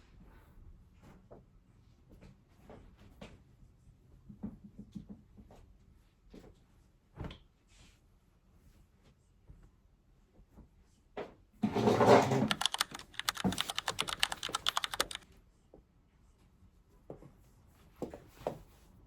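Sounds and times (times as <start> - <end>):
keyboard key clicks: 12.5 - 15.2.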